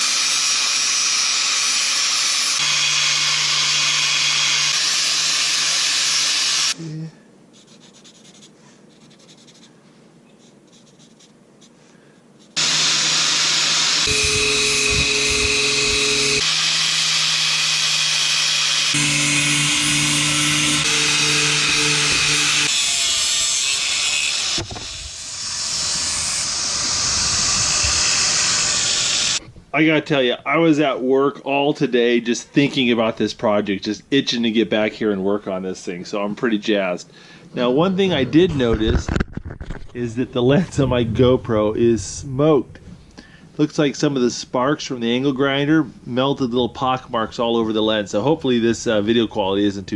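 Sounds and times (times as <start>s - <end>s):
angle grinder running: 0.0s - 6.8s, 12.6s - 29.4s.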